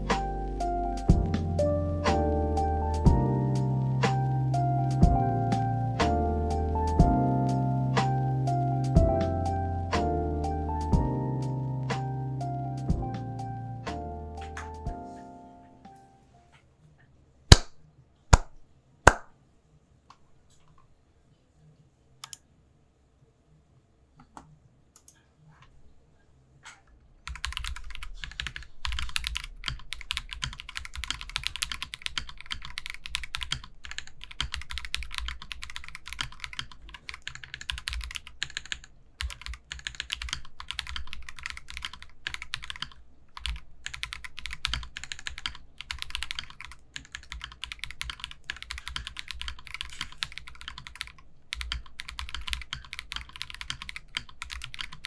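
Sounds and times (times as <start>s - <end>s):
typing on mechanical keyboard: 27.3s - 55.0s.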